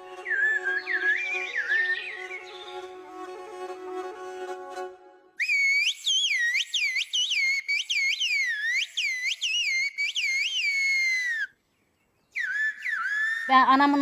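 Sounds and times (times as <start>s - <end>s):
person whistling: 5.4s - 11.5s, 12.4s - 13.7s.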